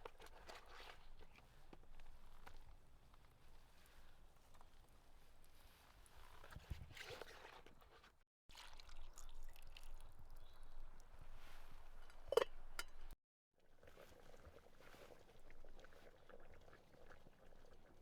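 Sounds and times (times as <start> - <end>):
liquid sloshing and pouring: 8.5 - 10.5.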